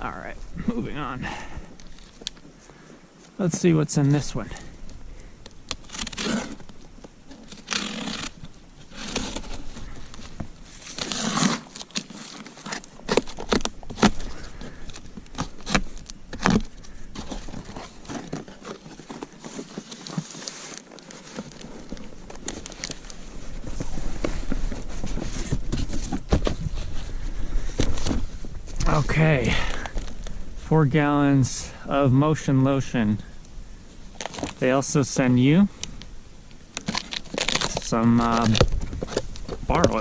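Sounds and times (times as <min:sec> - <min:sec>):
tape and packing material crinkling: 0:00.5 - 0:30.4, 0:34.0 - 0:40.0
knocks and scrapes of contents: 0:09.0 - 0:29.2.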